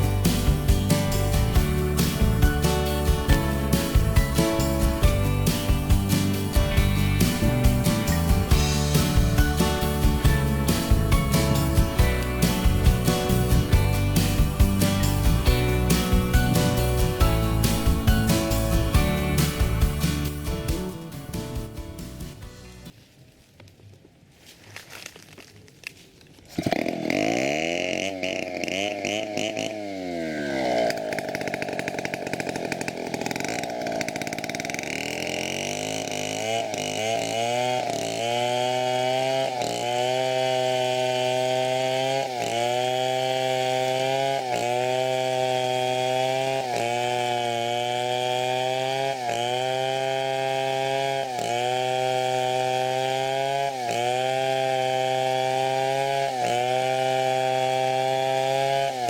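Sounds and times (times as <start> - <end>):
chainsaw cutting wood: 0.0 - 22.9, 26.4 - 59.0.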